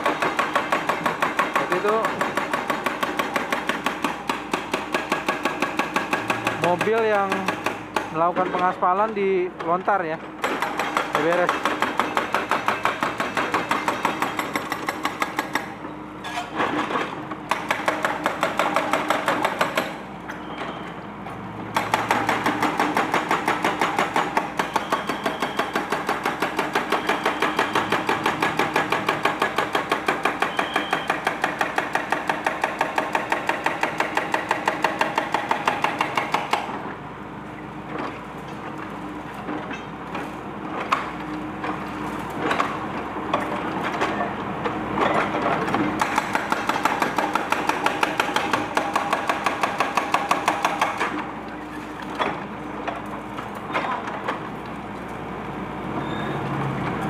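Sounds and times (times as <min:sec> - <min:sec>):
hydraulic breaker hammering concrete: 0:00.0 - 0:08.8, 0:09.6 - 0:15.8, 0:16.7 - 0:20.1, 0:21.7 - 0:36.8, 0:45.0 - 0:54.4.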